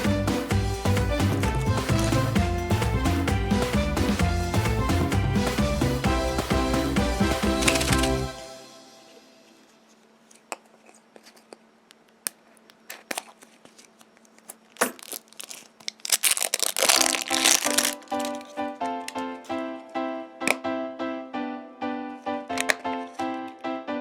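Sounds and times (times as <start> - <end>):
background music: 0.0 - 9.7, 16.8 - 24.0
wrapper crinkling and tearing: 7.6 - 8.1, 12.8 - 19.5.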